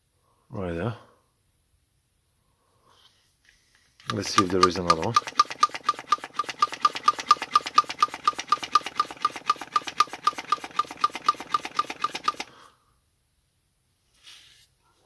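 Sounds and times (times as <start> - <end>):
hand pump squeaking strokes: 4.1 - 12.5.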